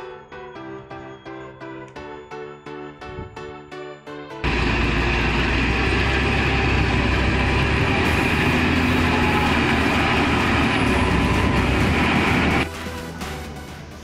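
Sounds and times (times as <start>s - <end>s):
diesel truck engine rumbling: 4.4s - 12.7s.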